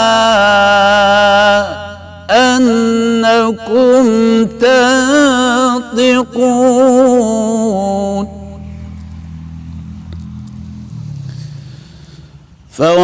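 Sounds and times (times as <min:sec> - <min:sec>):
man reciting in chant: 0:00.0 - 0:08.7, 0:12.7 - 0:13.0.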